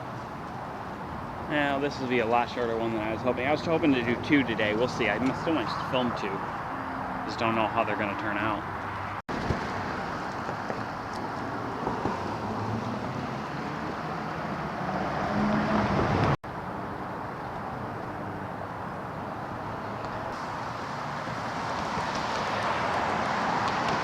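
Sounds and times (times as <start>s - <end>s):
street traffic: 0.0s - 24.0s
vehicle passing close: 1.1s - 16.4s.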